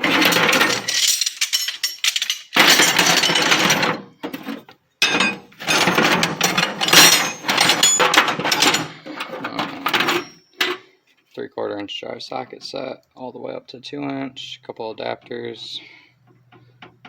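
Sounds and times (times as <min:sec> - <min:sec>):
metal tools clattering in toolbox: 0:00.0 - 0:10.8.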